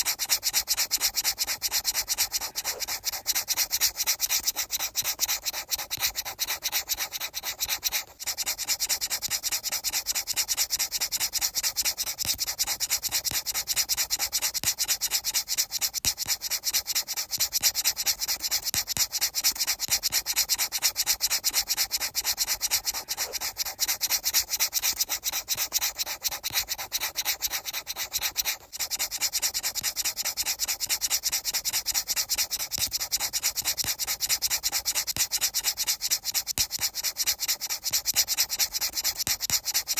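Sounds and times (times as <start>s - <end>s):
rapid hissy rubbing strokes: 0.0s - 9.2s, 19.6s - 31.7s, 32.3s - 39.9s.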